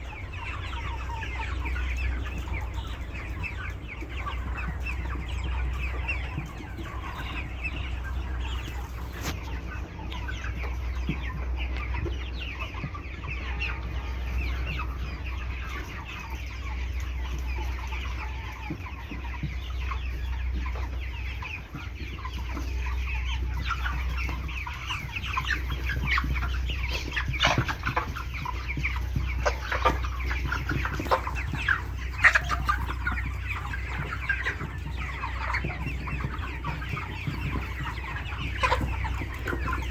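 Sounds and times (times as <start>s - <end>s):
chickens clucking and chirping: 0.0s - 39.9s.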